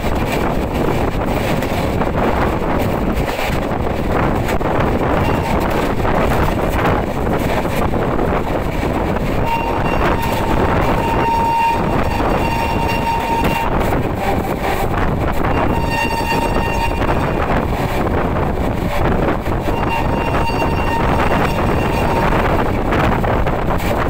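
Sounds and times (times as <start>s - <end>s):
train rushing past: 0.0s - 24.0s
shrill train horn: 5.2s - 5.8s, 9.4s - 14.5s, 15.4s - 17.6s, 19.7s - 22.6s.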